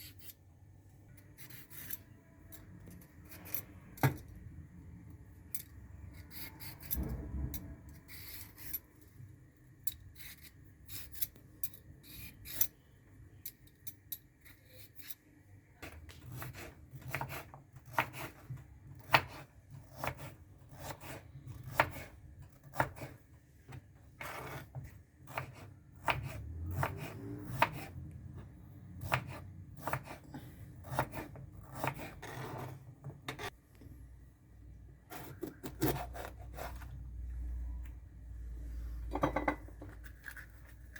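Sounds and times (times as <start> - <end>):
knife cutting on cutting board: 29.0 - 30.2.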